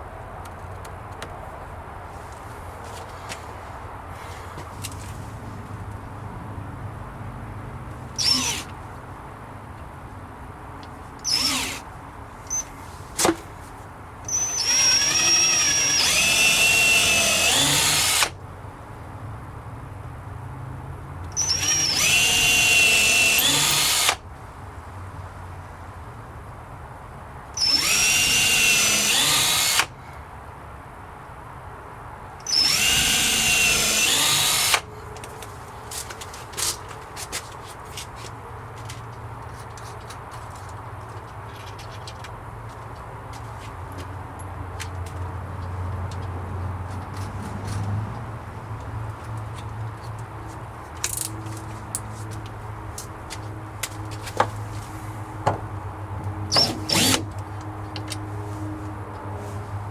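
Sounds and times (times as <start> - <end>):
power drill driving screws into wood: 8.2 - 8.7, 11.2 - 11.8, 14.3 - 18.4, 21.4 - 24.2, 27.6 - 29.9, 32.5 - 34.8, 56.5 - 57.3.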